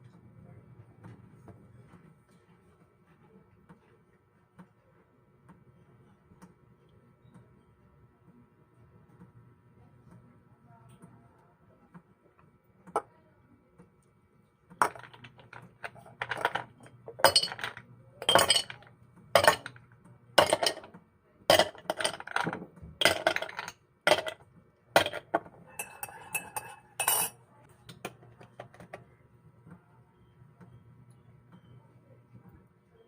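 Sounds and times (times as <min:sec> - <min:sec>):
faint low hum: 0:00.0 - 0:33.0
dishes clinking and clattering: 0:14.8 - 0:24.4, 0:25.0 - 0:27.4.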